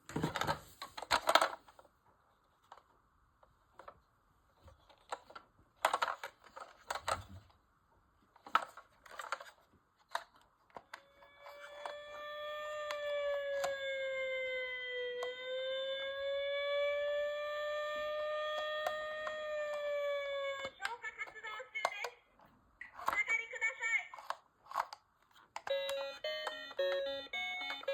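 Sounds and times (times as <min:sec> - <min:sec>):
plastic toy clicks and knocks: 0:05.0 - 0:07.3, 0:24.1 - 0:27.9
electronic toy siren: 0:10.9 - 0:20.8, 0:25.7 - 0:27.9.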